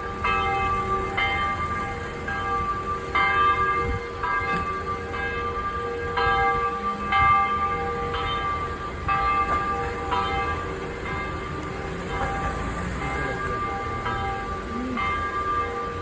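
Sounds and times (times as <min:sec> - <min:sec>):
large church bell ringing: 0:00.0 - 0:16.0.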